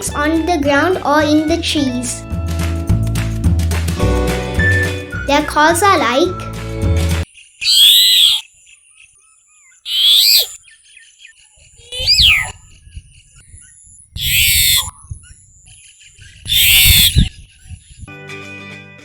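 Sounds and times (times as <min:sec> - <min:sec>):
starling calling: 0:07.6 - 0:12.7, 0:13.4 - 0:17.7.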